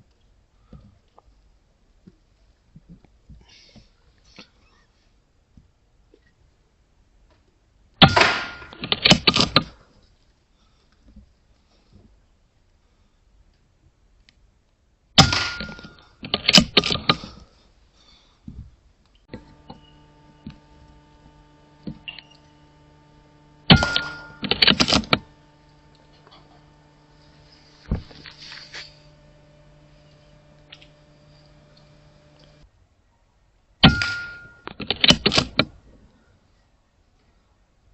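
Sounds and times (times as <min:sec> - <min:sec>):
steady low hum: 0:15.2 - 0:32.6, 0:33.8 - 0:36.1.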